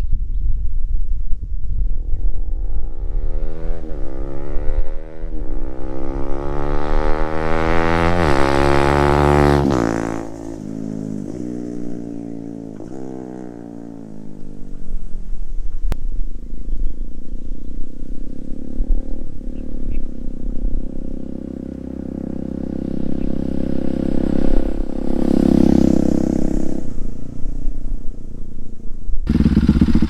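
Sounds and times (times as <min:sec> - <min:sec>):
motorcycle engine accelerating: 0:00.8 - 0:30.0
motorcycle throttle blips: 0:03.8 - 0:30.0.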